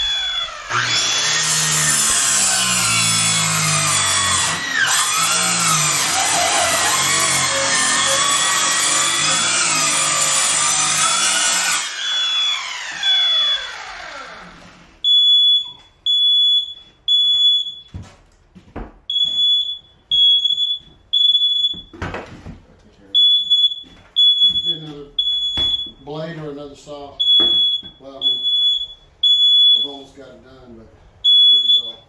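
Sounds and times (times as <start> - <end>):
electric saw cutting plywood: 0.0 - 15.0
smoke alarm beeping: 11.9 - 13.8, 15.0 - 18.0, 19.1 - 22.0, 23.2 - 26.1, 27.2 - 30.1, 31.2 - 32.0
knocks: 25.5 - 25.9, 27.4 - 28.0.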